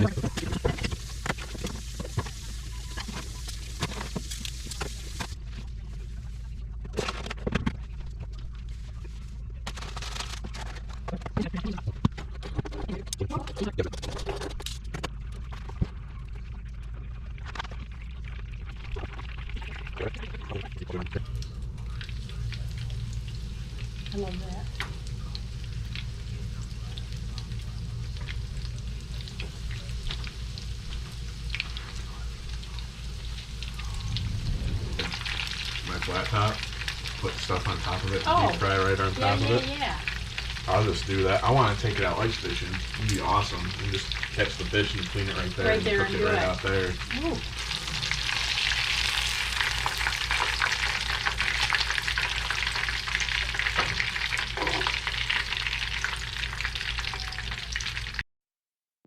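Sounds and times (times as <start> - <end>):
food sizzling in hot oil: 0.0 - 5.4, 21.8 - 58.2
low hum: 0.0 - 58.2
oil crackling and popping: 0.0 - 58.2.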